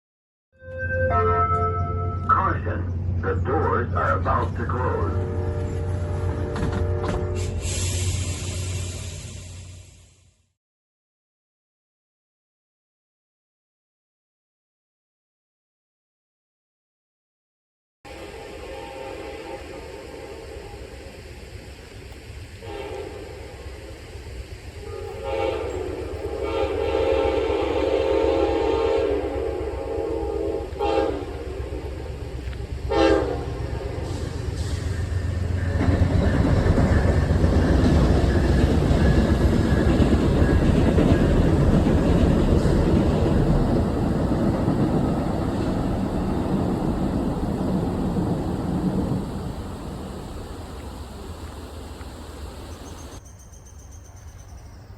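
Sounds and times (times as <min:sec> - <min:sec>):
locomotive air horn: 0:00.6 - 0:02.4, 0:04.7 - 0:09.3, 0:18.1 - 0:21.0, 0:22.6 - 0:23.7, 0:24.8 - 0:31.8, 0:32.9 - 0:36.0
train rumbling past: 0:00.6 - 0:10.5, 0:18.1 - 0:54.9.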